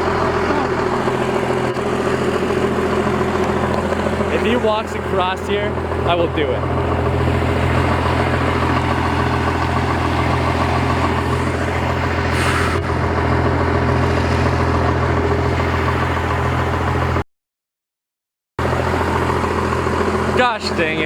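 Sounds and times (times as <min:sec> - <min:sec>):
diesel engine idling: 0:00.0 - 0:17.2, 0:18.6 - 0:21.0.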